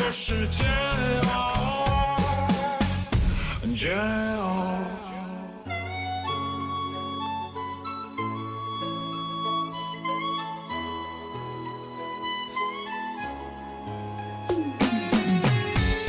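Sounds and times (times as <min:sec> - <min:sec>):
instrumental pop ballad: 0:00.0 - 0:16.0.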